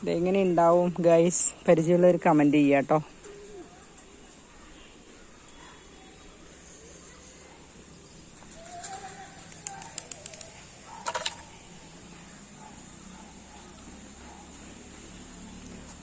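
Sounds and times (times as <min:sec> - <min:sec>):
sharp clicks: 0:09.4 - 0:11.6.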